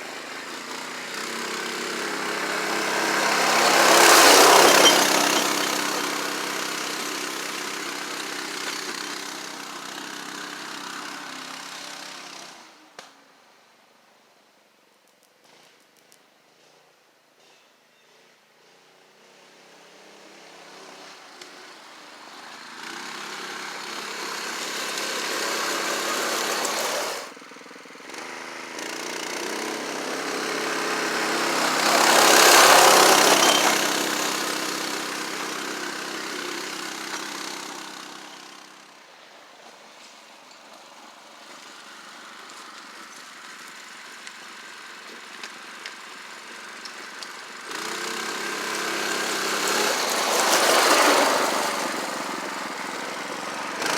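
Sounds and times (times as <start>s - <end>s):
atv engine running: 0.0s - 11.9s, 22.2s - 38.6s, 41.7s - 53.9s.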